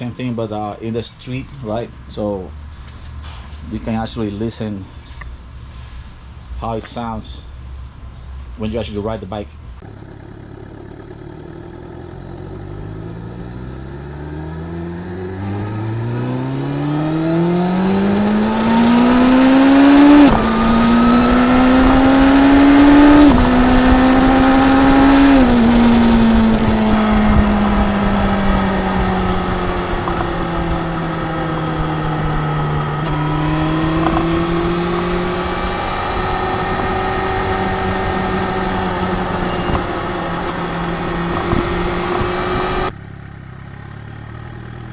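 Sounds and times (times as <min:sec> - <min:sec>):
motorcycle engine accelerating: 0:09.8 - 0:44.9.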